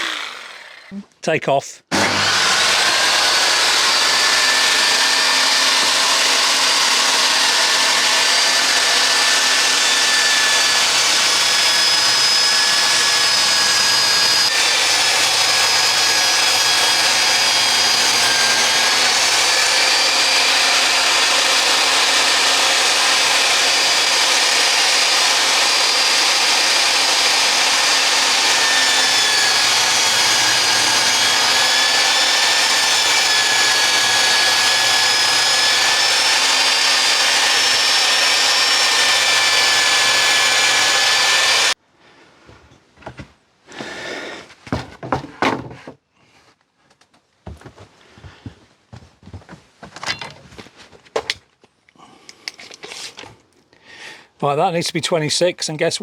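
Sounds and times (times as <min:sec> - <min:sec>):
power saw cutting wood: 0:00.0 - 0:01.0, 0:01.9 - 0:41.8.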